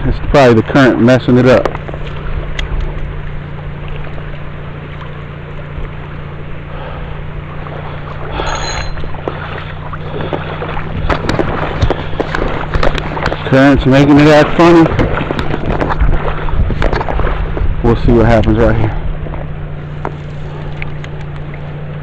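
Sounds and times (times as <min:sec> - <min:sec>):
low motor hum: 0:00.0 - 0:22.0
water noise: 0:00.0 - 0:22.0
high squeak: 0:08.4 - 0:09.1
wind noise: 0:10.9 - 0:19.4.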